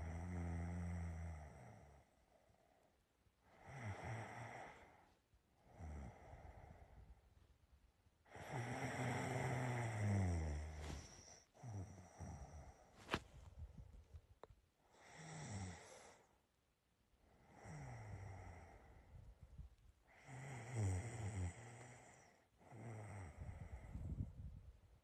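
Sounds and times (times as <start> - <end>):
person snoring: 3.6 - 5.0, 5.7 - 6.9, 8.3 - 12.9, 15.0 - 16.2, 17.4 - 19.0, 20.1 - 24.0.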